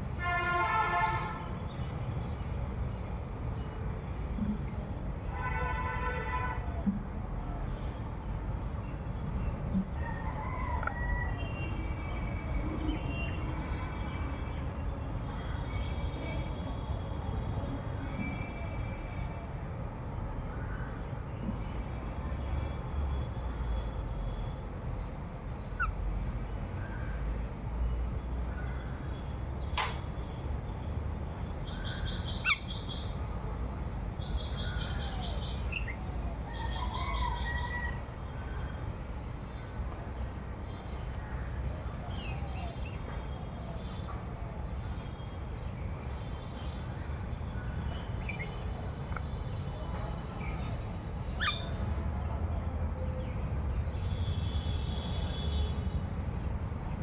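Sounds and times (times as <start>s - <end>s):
high insect drone: 0.0s - 57.0s
sharp clicks: 29.8s - 30.4s.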